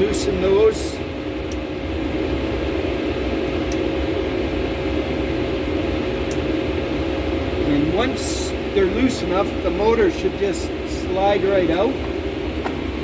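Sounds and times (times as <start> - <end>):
workshop machinery droning: 0.0 - 13.0
faint clicks of motor clamps: 1.4 - 2.2.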